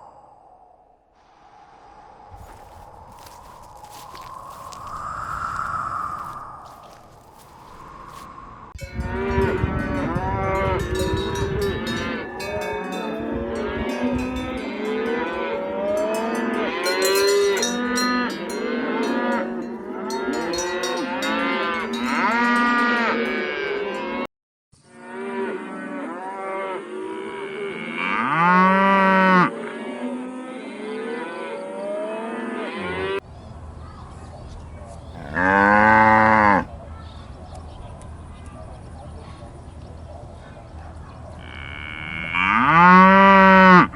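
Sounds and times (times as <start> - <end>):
cattle mooing: 25.0 - 33.2, 35.2 - 36.7, 41.4 - 43.9.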